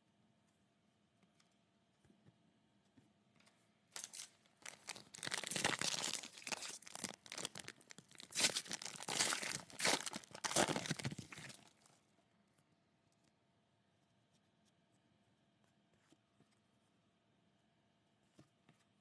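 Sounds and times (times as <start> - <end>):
plastic packaging crinkling and tearing: 4.0 - 11.9.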